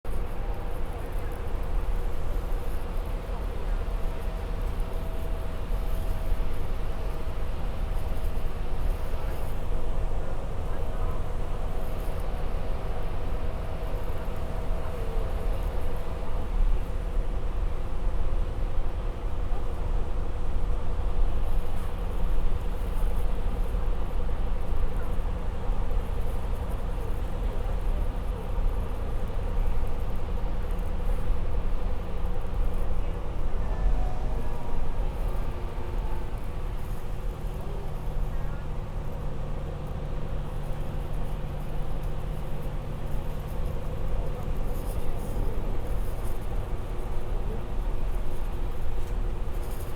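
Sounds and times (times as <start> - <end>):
bus engine rumbling: 2.7 - 18.0, 29.0 - 49.8.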